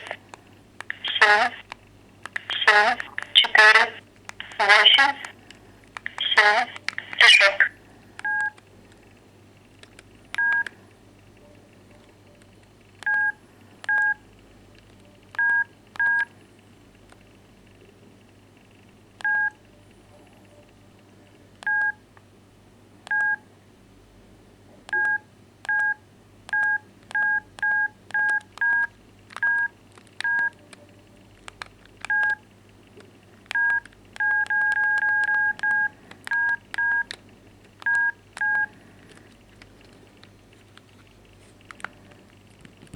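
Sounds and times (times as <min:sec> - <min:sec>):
mobile phone keypad beeps: 0:06.1 - 0:08.6, 0:10.4 - 0:10.7, 0:13.1 - 0:14.2, 0:15.4 - 0:16.3, 0:19.2 - 0:19.6, 0:21.7 - 0:22.0, 0:23.1 - 0:23.4, 0:25.0 - 0:30.8, 0:32.1 - 0:32.4, 0:33.6 - 0:37.1, 0:37.8 - 0:38.7.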